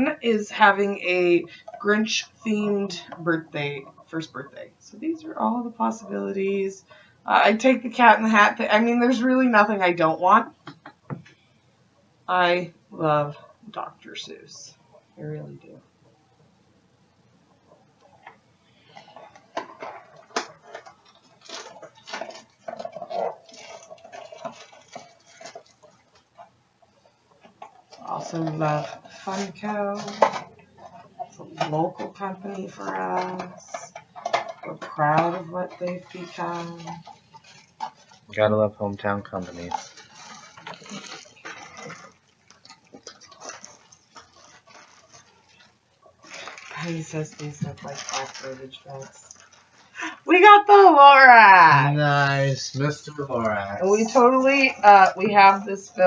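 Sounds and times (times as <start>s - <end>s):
cardboard packaging crinkling: 18.0s - 38.3s, 39.3s - 50.1s.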